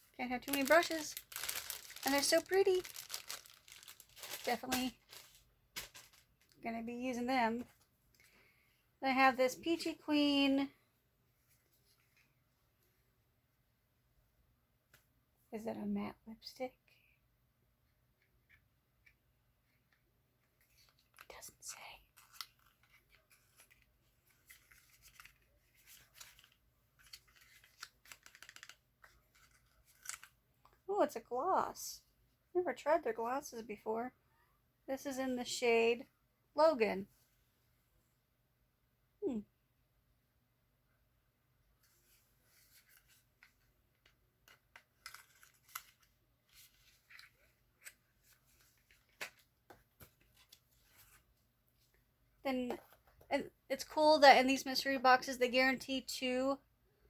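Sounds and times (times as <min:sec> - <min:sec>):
packaging rustling: 0:00.4 - 0:06.6, 0:22.2 - 0:30.3
light clicking of packaging: 0:26.0 - 0:30.3.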